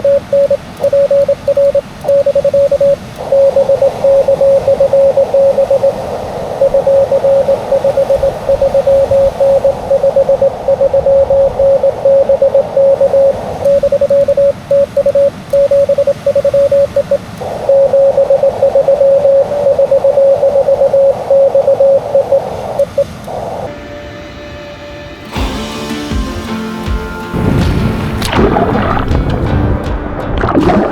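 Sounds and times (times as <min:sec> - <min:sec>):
morse code tone: 0:00.0 - 0:24.2
receiver hiss: 0:00.0 - 0:28.4.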